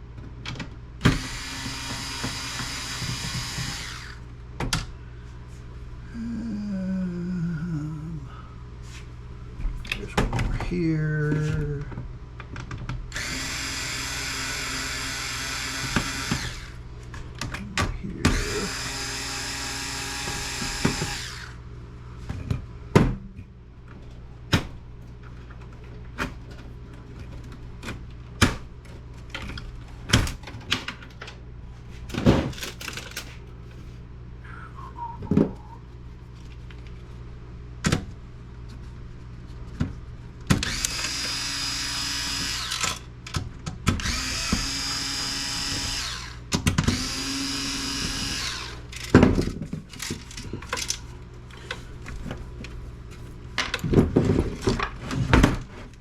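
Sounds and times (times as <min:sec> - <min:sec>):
cordless drill running: 0:01.1 - 0:04.3, 0:13.1 - 0:16.8, 0:18.3 - 0:21.6, 0:40.6 - 0:43.1, 0:44.0 - 0:48.9.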